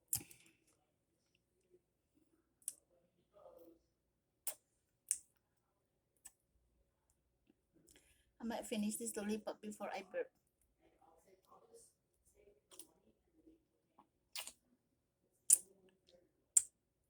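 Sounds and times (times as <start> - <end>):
wet mouth smacks: 14.4 - 14.6.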